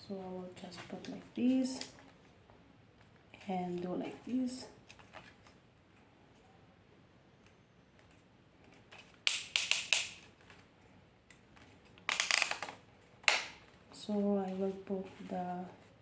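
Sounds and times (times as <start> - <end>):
sharp plastic clicks: 8.9 - 10.6, 12.0 - 13.7
rattle of clicks: 12.0 - 13.6.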